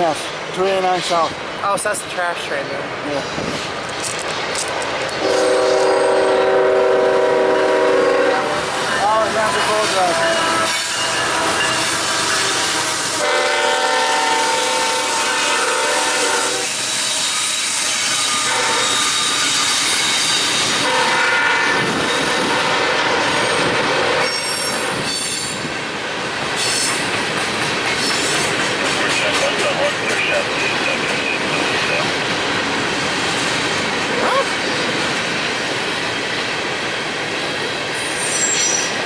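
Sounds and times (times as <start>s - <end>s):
freight train passing: 0.0s - 39.0s
train horn: 5.2s - 8.7s, 9.6s - 19.7s, 20.8s - 24.9s
wheel squeals: 38.0s - 39.0s.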